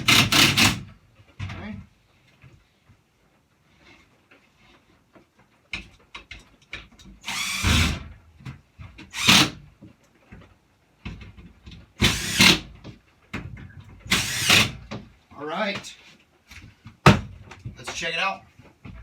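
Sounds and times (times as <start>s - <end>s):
power drill driving screws: 0.0s - 0.8s, 7.2s - 8.0s, 9.1s - 9.6s, 12.0s - 12.7s, 14.1s - 14.8s
small knocks and clicks: 4.1s - 7.2s.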